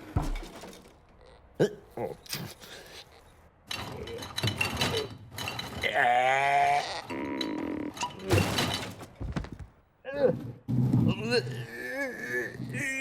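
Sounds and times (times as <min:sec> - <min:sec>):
cartoon animal bleat: 0:05.8 - 0:07.8.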